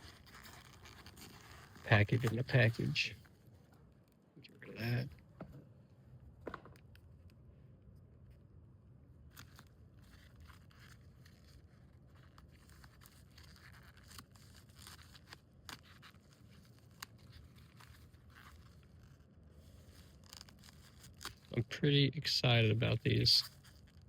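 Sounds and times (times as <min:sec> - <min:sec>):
packaging rustling and scraping: 0:00.0 - 0:03.5, 0:09.3 - 0:21.5, 0:23.1 - 0:24.0.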